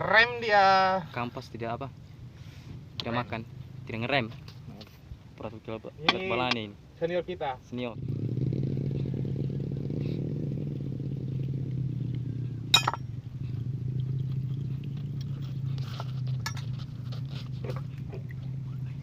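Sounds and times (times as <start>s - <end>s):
engine running steadily: 8.0s - 19.0s.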